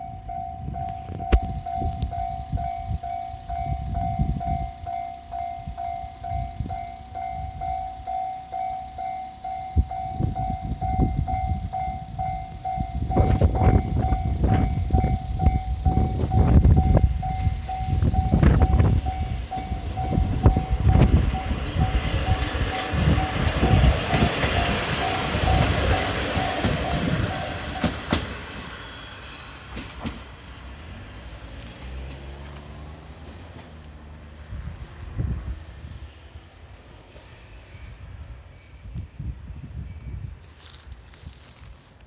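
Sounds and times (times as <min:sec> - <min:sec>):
wind buffeting microphone: 0:00.0 - 0:05.0, 0:05.6 - 0:08.1, 0:09.0 - 0:28.7, 0:34.2 - 0:36.2, 0:37.9 - 0:41.5
level-crossing bell ringing: 0:00.0 - 0:28.0
approaching train rail noise: 0:00.0 - 0:42.0.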